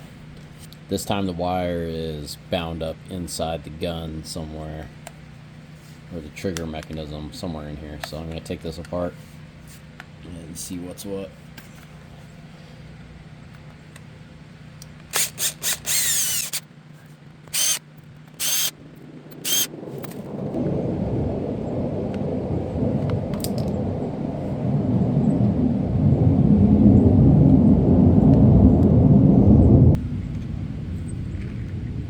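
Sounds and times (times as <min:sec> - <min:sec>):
low rumbling noise: 0:14.1 - 0:16.6, 0:17.5 - 0:32.0
cordless drill bursts: 0:15.1 - 0:16.6, 0:17.5 - 0:17.8, 0:18.4 - 0:18.7, 0:19.4 - 0:19.7.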